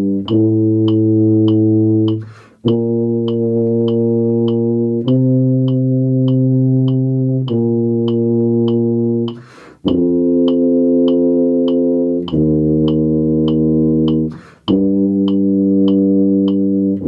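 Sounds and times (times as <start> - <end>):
metronome clicking: 0.0 - 17.0
tuba sustained notes: 0.0 - 17.0
quick breath: 2.2 - 2.6, 9.4 - 9.8, 14.3 - 14.7.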